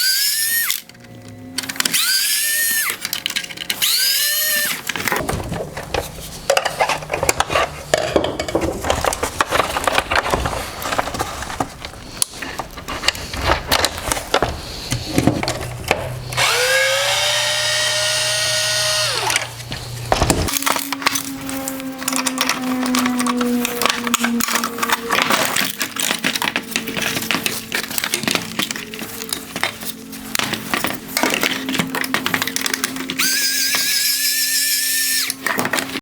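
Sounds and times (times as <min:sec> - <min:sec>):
electric screwdriver spinning: 0:00.0 - 0:00.9, 0:01.6 - 0:03.0, 0:03.8 - 0:05.0, 0:16.3 - 0:19.7, 0:33.2 - 0:35.4
screws and plastic parts rattling: 0:00.0 - 0:36.0.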